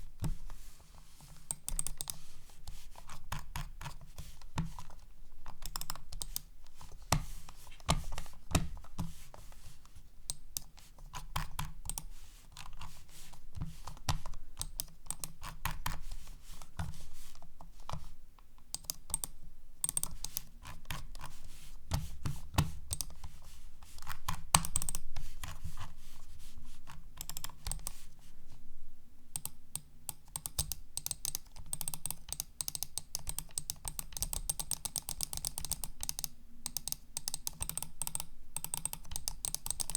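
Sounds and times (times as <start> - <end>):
mouse rubbing on surface: 12.1 - 14.2, 15.9 - 18.1, 20.2 - 24.5, 25.2 - 27.0.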